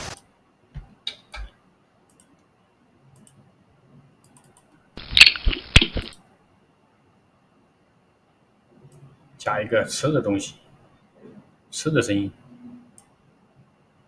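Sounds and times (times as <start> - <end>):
soft mouse clicks: 0.8 - 2.5, 3.1 - 3.4, 4.2 - 4.8, 12.9 - 13.2
sound effect cracks and knocks: 5.0 - 6.2.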